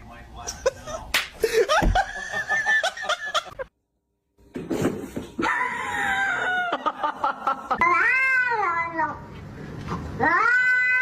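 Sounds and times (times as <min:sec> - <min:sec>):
cats meowing and yowling: 0:07.8 - 0:09.1, 0:10.2 - 0:11.0.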